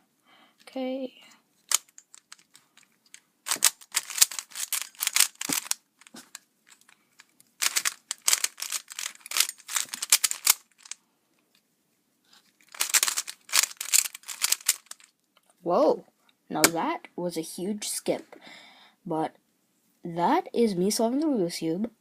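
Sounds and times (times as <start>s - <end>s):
puzzle cube layers clicking: 1.7s - 6.8s, 7.6s - 11.0s, 12.7s - 15.1s.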